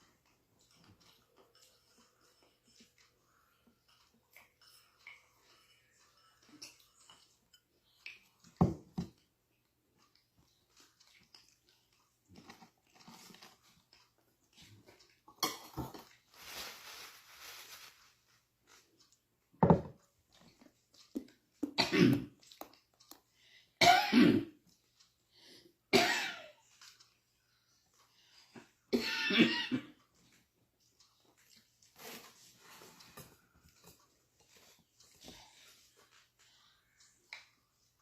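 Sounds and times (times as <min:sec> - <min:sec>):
chewing: 0:00.0 - 0:16.3, 0:20.0 - 0:23.8, 0:30.0 - 0:38.0
rustling: 0:16.0 - 0:19.0
person coughing: 0:21.7 - 0:22.4, 0:23.8 - 0:24.6.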